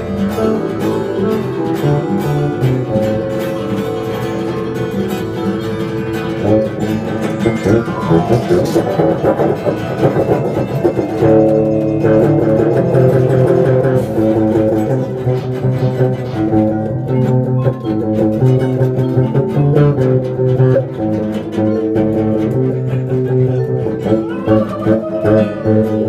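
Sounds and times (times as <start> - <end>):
bass line: 0.0 - 26.0
plucked string melody: 0.0 - 26.0.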